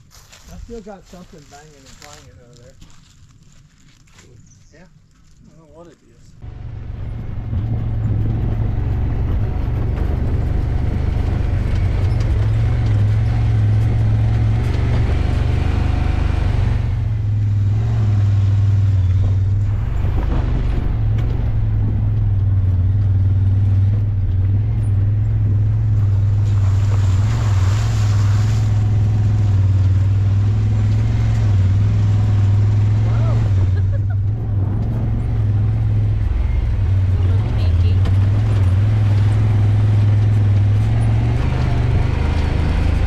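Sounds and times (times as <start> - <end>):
road noise: 0.0 - 43.0
vehicle engine droning: 6.4 - 43.0.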